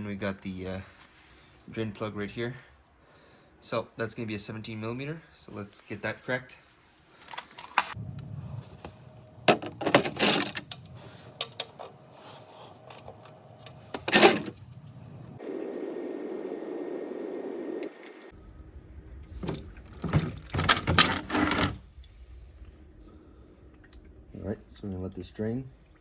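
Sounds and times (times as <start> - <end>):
metal clanking: 19.4 - 21.8.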